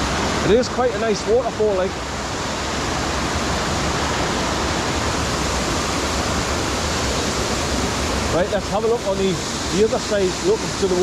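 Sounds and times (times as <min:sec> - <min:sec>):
waterfall pouring: 0:00.0 - 0:11.0.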